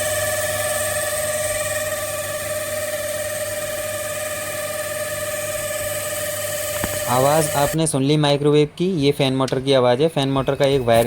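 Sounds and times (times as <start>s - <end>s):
microwave oven humming: 0.0s - 7.8s.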